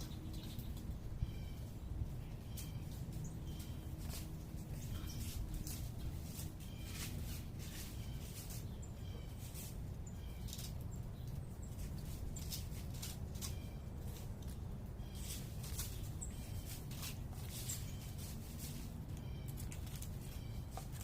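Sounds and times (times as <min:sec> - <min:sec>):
distant city rumble: 0:00.0 - 0:21.0
small birds chirping: 0:00.0 - 0:21.0.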